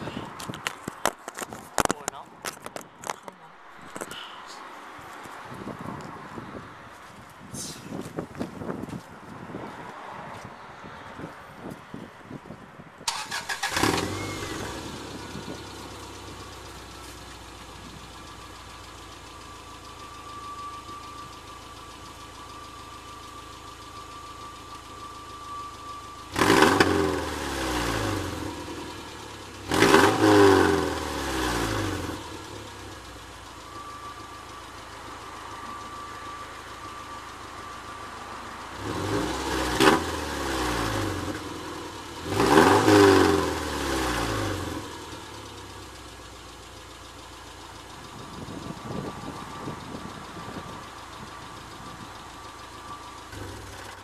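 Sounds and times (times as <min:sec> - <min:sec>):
car engine starting: 0:13.0 - 0:54.0
car engine revving: 0:13.1 - 0:16.8, 0:26.3 - 0:32.6, 0:38.6 - 0:45.6
car engine idling: 0:13.1 - 0:54.0.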